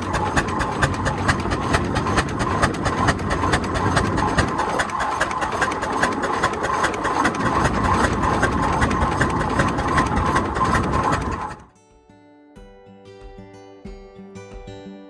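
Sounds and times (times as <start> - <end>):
steam engine clattering: 0.0 - 11.7.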